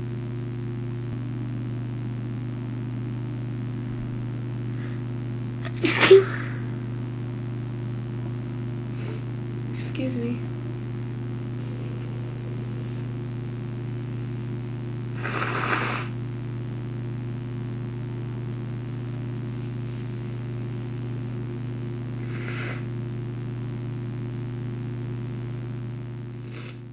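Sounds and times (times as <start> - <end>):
steady low hum: 0.0 - 26.9
sniffs through stuffy nose: 15.2 - 16.2, 22.2 - 22.9, 26.4 - 26.9.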